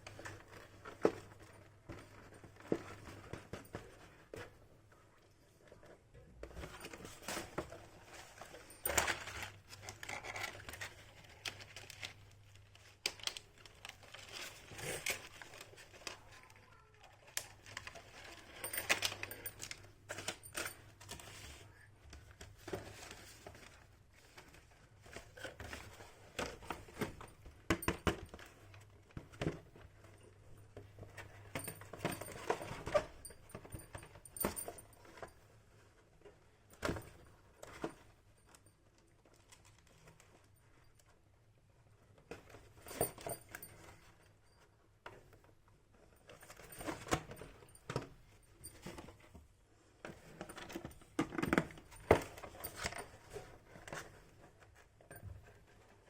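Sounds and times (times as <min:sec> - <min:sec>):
small clicks and clinks: 0:05.7 - 0:12.2, 0:13.1 - 0:21.5, 0:25.1 - 0:30.2, 0:30.8 - 0:35.5, 0:42.4 - 0:45.4, 0:46.0 - 0:49.4, 0:50.1 - 0:54.2.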